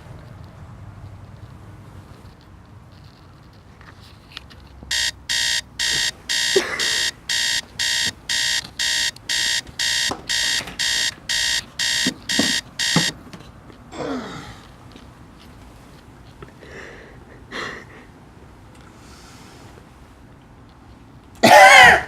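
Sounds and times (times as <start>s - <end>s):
electronic alarm beeping: 4.9s - 13.2s.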